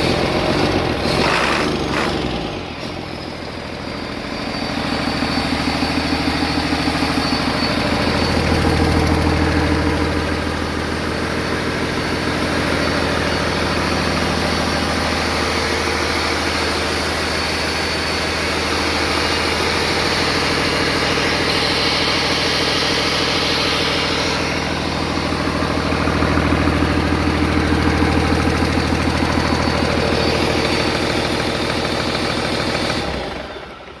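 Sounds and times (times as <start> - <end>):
diesel engine idling: 0.0 - 34.0.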